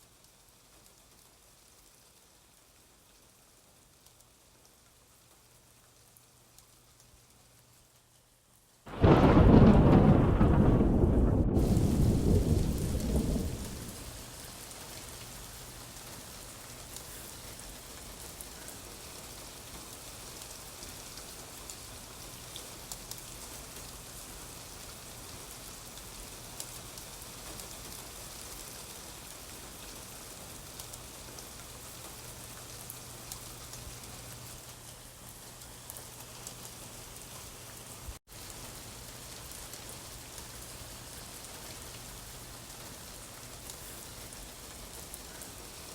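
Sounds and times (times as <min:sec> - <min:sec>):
low thunder rumble: 0:08.9 - 0:14.2
rain hissing: 0:08.9 - 0:45.9.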